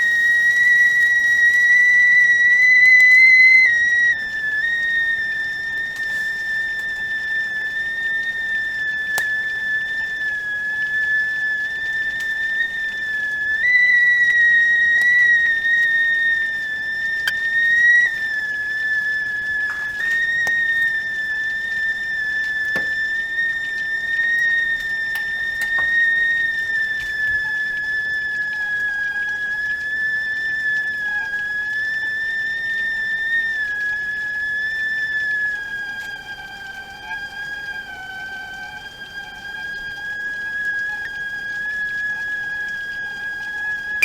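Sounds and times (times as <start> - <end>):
kettle whistling: 0.0 - 44.0
faint clicks: 2.8 - 34.2.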